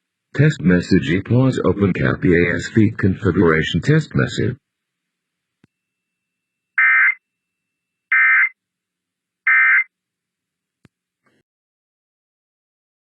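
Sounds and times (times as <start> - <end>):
digital data tone bursts: 6.8 - 7.2, 8.1 - 8.5, 9.5 - 9.9.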